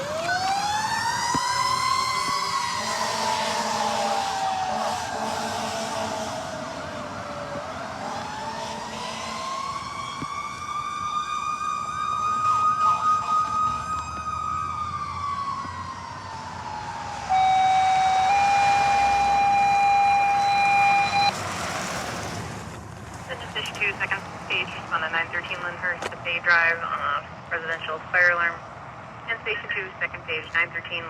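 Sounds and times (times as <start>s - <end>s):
fire engine siren wailing: 0.0s - 22.6s, 23.3s - 28.6s
two-tone radio dispatch page: 17.4s - 21.3s, 23.3s - 28.6s, 29.3s - 31.0s.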